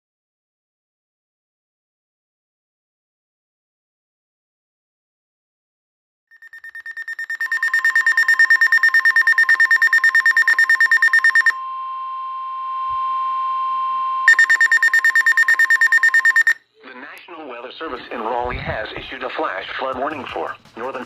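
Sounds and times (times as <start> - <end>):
rapid pulsing electronic beep: 6.4 - 11.6, 14.3 - 16.6
steady warning tone: 6.4 - 16.6.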